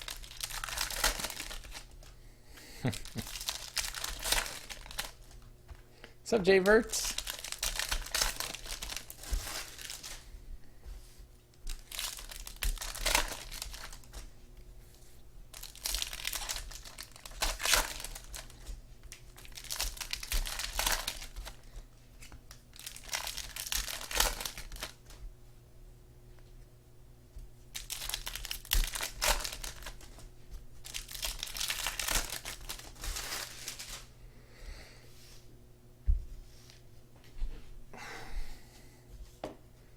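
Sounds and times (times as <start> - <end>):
card pack wrappers torn and crinkled: 0.0 - 2.1, 2.8 - 5.4, 6.4 - 10.2, 11.5 - 14.3, 15.5 - 25.2, 27.7 - 34.1.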